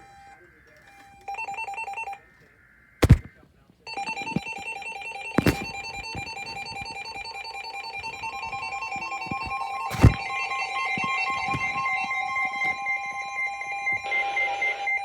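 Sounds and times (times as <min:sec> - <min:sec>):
pulsing two-tone alarm: 0:03.9 - 0:15.0.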